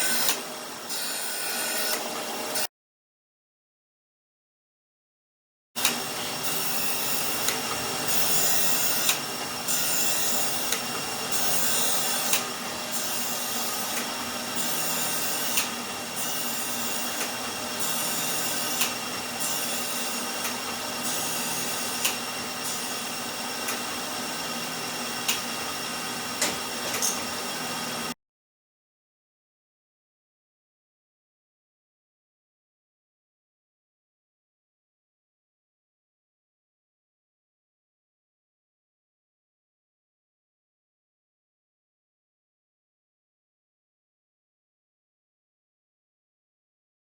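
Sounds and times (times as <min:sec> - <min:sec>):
power scraper motor running: 0:00.0 - 0:02.7.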